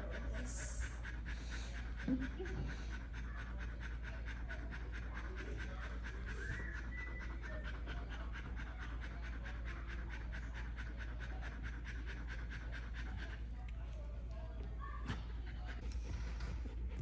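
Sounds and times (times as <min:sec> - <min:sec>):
dog panting rapidly: 0:00.0 - 0:17.0.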